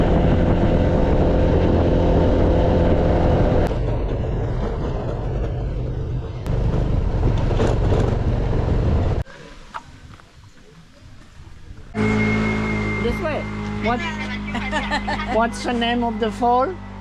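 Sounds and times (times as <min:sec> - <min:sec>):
motor scooter engine running: 0:12.0 - 0:17.0.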